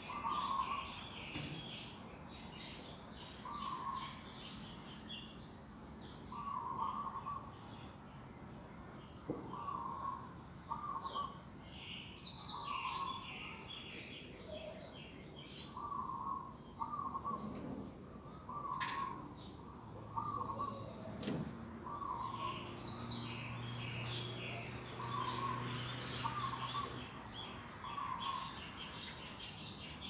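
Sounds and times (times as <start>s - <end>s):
birds chirping and twittering: 0.0s - 30.0s.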